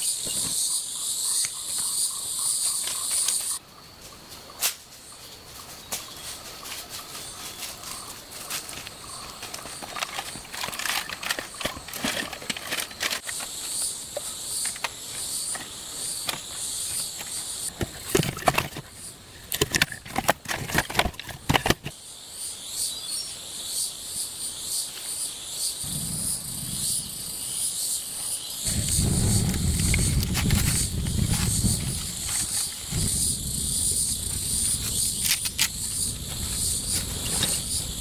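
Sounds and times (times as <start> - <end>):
insects chirring: 0.0 - 38.0
low rumble: 25.8 - 27.6, 28.7 - 35.2.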